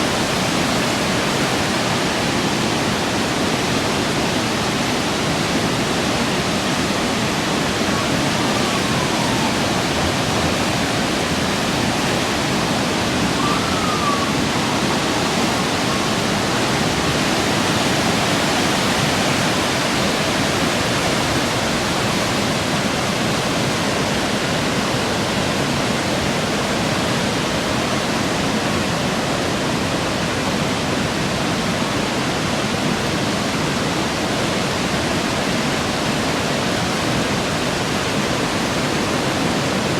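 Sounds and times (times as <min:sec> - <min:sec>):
rush of floodwater: 0:00.0 - 0:39.9
faint whistling glides: 0:07.7 - 0:17.6.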